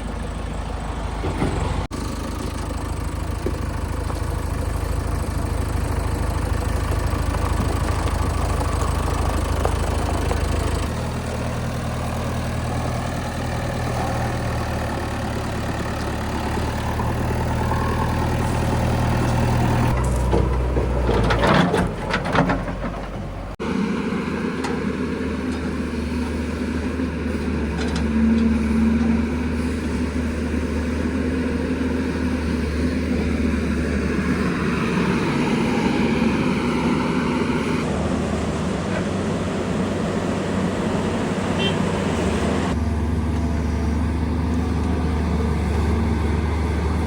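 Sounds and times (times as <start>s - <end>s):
heavy diesel engine running: 0.0s - 47.0s
metal clanks and rattles: 19.2s - 23.6s.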